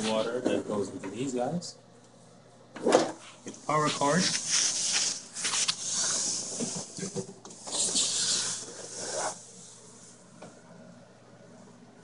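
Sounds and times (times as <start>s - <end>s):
rubbing and scraping handling: 3.2s - 10.1s.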